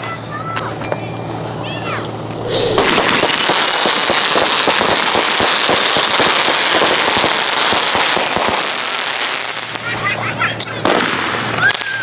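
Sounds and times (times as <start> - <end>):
fireworks popping and crackling: 2.8 - 12.0.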